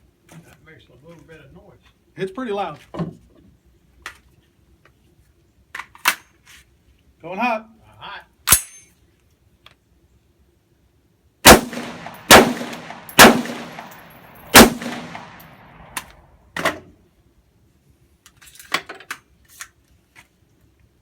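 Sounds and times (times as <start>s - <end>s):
gunshots with echo: 11.5s - 16.0s.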